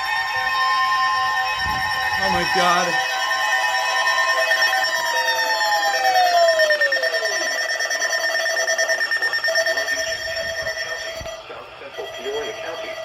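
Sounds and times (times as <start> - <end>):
steady electronic alert tones: 1.6 - 3.4, 5.5 - 13.0.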